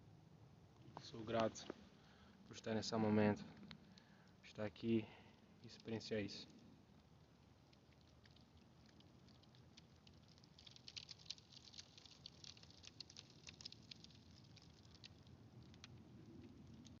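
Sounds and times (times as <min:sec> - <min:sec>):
lake ice crackling: 0:05.6 - 0:17.0.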